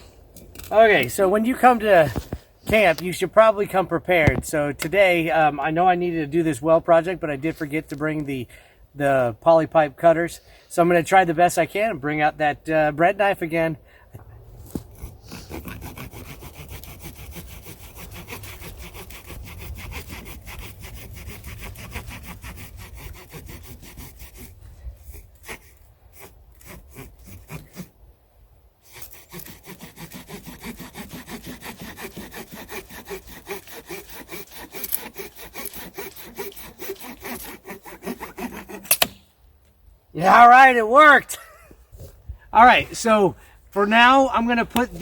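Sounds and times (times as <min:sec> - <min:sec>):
knife sawing through plastic pipe: 0:14.7 - 0:27.9, 0:28.8 - 0:39.0.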